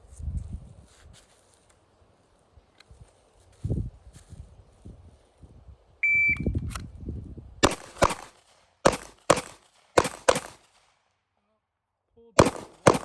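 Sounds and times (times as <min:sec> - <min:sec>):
shot timer beep: 0:06.0 - 0:06.6
handgun shots: 0:07.6 - 0:10.8, 0:12.4 - 0:13.0.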